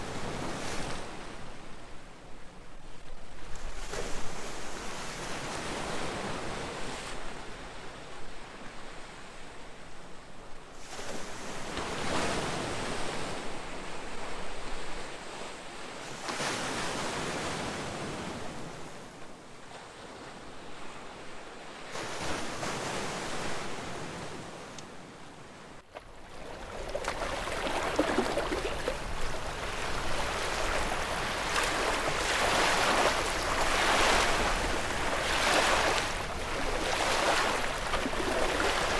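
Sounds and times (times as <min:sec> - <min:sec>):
ocean waves breaking: 0:25.9 - 0:38.9.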